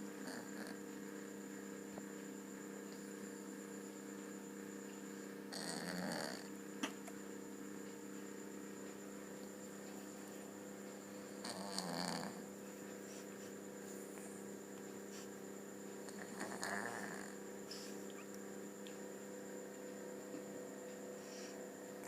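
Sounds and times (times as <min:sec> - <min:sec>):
electrical hum: 0:00.0 - 0:22.0
cat snoring: 0:00.2 - 0:00.8, 0:05.5 - 0:06.5, 0:11.4 - 0:12.4, 0:16.1 - 0:17.9.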